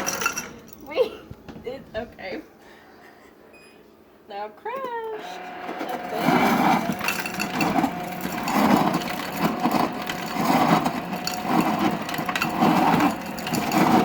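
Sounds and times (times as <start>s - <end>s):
ice crusher grinding ice: 5.2s - 14.0s
motor hum: 5.2s - 14.0s.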